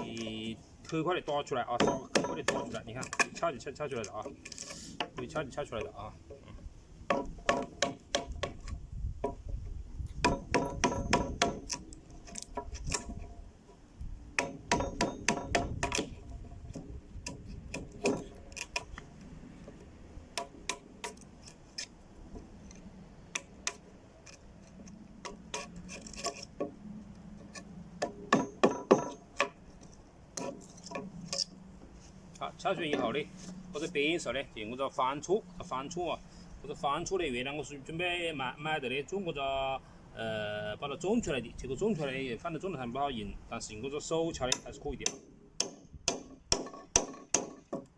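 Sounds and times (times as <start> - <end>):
hammer tapping metal file: 1.8 - 3.4, 10.2 - 11.8, 14.4 - 18.8, 28.0 - 29.6.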